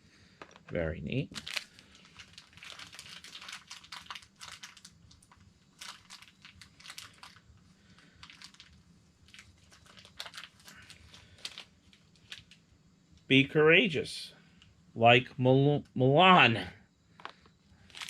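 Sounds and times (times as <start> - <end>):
foil bag crinkling: 1.3 - 12.6, 17.8 - 18.0.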